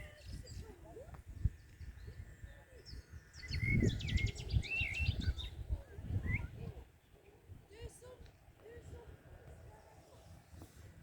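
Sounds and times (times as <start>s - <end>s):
songbird warbling with trills: 1.5s - 6.7s.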